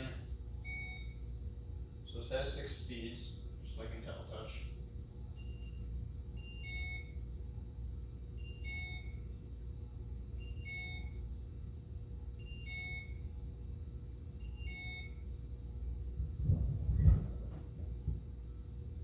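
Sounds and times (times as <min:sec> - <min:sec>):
low steady rumble: 0:00.0 - 0:19.0
electronic beep pattern: 0:05.4 - 0:07.2, 0:08.4 - 0:09.2, 0:10.4 - 0:11.2, 0:12.4 - 0:13.2, 0:14.4 - 0:15.2.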